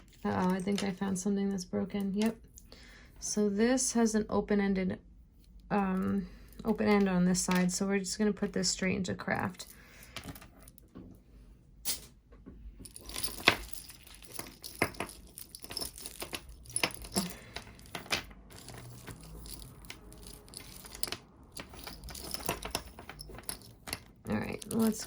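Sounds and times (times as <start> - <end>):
jewelry clinking and clattering: 0.0 - 1.2, 9.4 - 11.0, 11.9 - 25.0.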